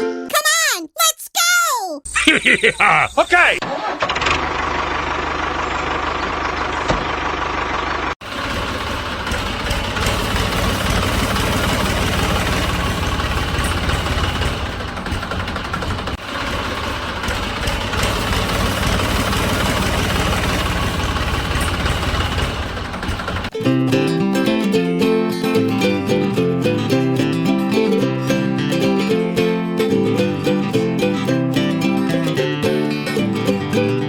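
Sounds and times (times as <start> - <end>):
small motor knocking: 4.0 - 23.6.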